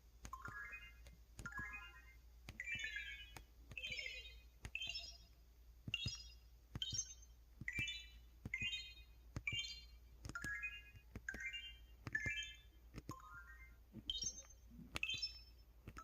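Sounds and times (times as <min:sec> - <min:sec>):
short electronic beeps: 0:02.6 - 0:05.3, 0:05.9 - 0:12.8.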